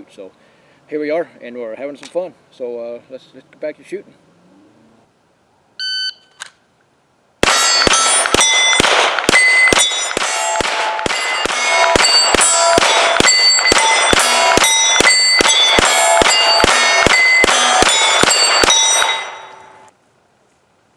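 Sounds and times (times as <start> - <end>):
pistol firing rapidly: 7.4 - 19.5
steel target ringing clang: 7.4 - 19.9.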